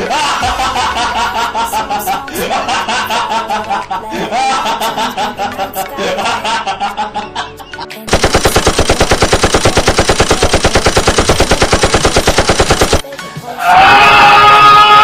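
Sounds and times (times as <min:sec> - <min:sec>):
machine gun firing: 0:08.1 - 0:13.0.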